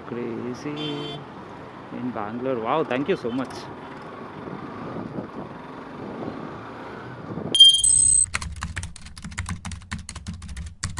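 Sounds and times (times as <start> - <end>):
road and riding noise: 0.0 - 8.2
high electronic tone: 7.6 - 8.3
keyboard typing clicks: 7.6 - 10.9.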